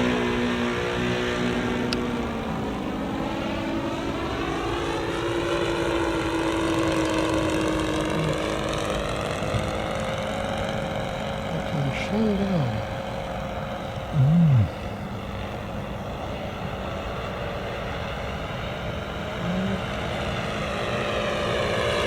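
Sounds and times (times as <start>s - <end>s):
model airplane engines droning: 0.0s - 22.0s.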